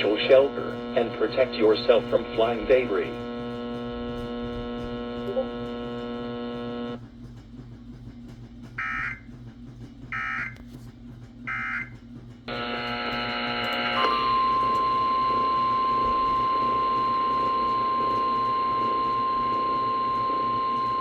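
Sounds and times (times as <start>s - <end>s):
steady attention tone: 0.0s - 7.0s, 8.8s - 9.2s, 10.1s - 10.6s, 11.5s - 11.9s, 12.5s - 21.0s
steady electronic buzz: 0.0s - 7.0s, 8.8s - 9.2s, 10.2s - 10.6s, 11.5s - 11.9s, 12.5s - 21.0s.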